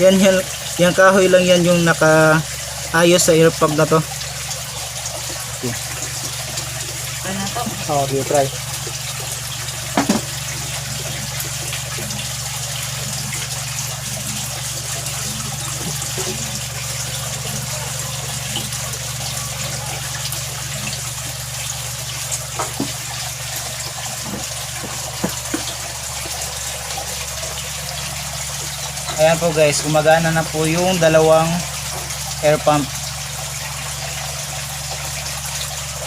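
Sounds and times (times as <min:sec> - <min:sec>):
aquarium air pumps humming: 0:00.0 - 0:36.0.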